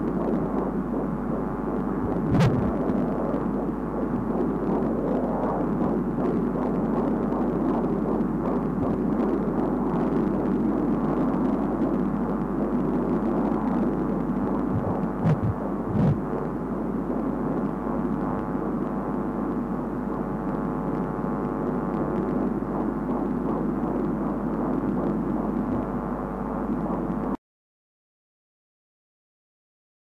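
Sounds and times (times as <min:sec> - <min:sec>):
doppler heartbeat pulse: 0:00.0 - 0:11.9, 0:12.5 - 0:17.6, 0:21.6 - 0:27.3.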